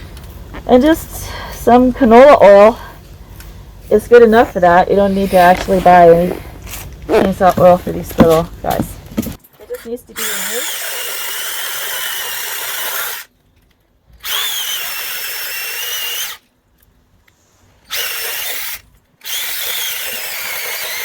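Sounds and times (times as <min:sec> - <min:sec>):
mini chainsaw high-pitched whine: 0:10.2 - 0:13.3, 0:14.2 - 0:16.4, 0:17.9 - 0:21.0.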